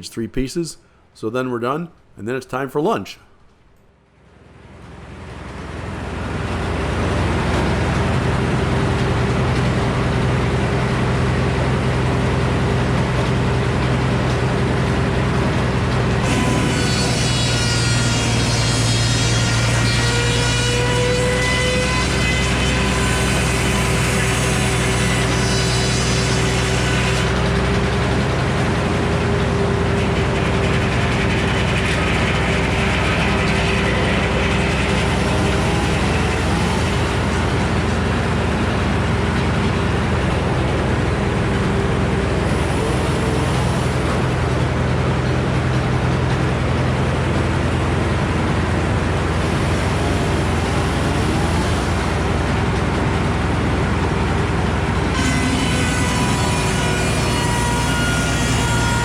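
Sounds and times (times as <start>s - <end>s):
sawmill power unit droning: 4.2s - 59.0s
spinning saw blade whirring: 30.0s - 38.1s.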